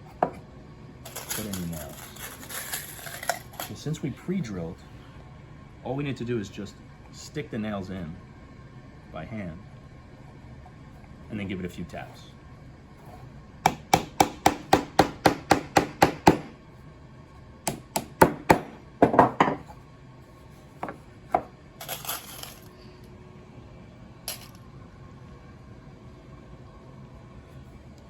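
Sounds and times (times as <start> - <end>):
scraping rustle: 1.1 - 3.8
hammer tapping nails into wood: 13.7 - 16.5.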